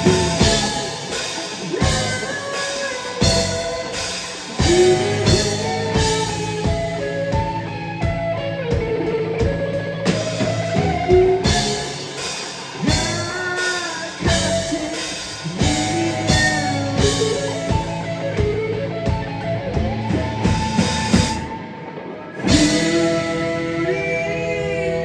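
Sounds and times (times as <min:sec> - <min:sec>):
drum kit beating: 0:00.0 - 0:24.7
electric guitar lead lines: 0:00.0 - 0:25.0.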